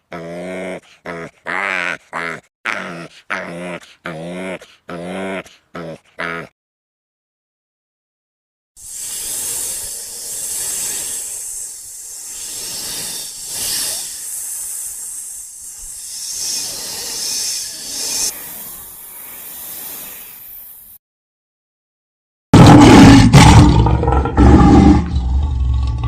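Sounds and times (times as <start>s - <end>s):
long rough hiss: 8.8s - 21.0s.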